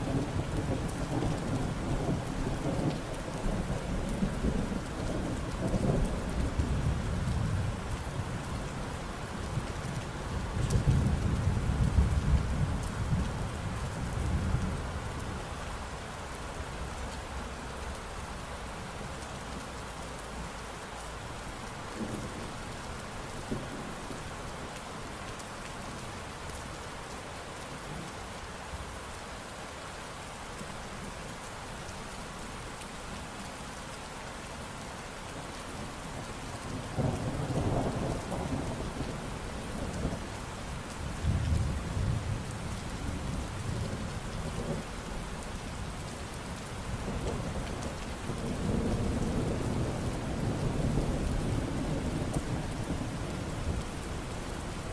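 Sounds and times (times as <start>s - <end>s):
rain falling: 0.0s - 54.9s.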